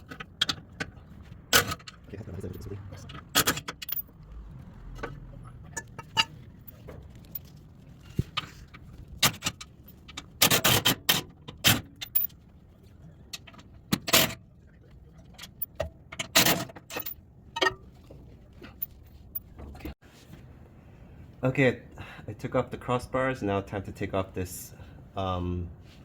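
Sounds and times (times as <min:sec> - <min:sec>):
metal tools and bolts clinking: 0:00.0 - 0:04.4, 0:05.0 - 0:12.4, 0:15.2 - 0:20.0.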